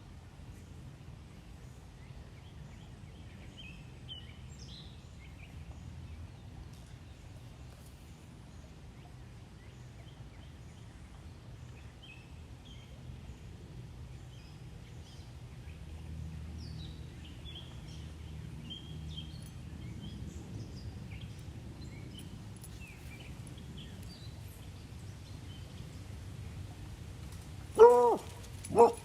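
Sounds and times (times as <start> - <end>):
small birds chirping: 16.6 - 29.0.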